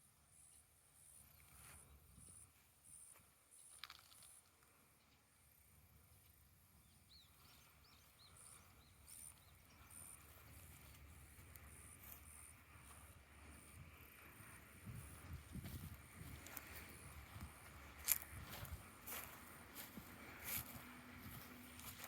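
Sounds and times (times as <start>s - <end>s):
faint high chirping: 6.8s - 12.9s.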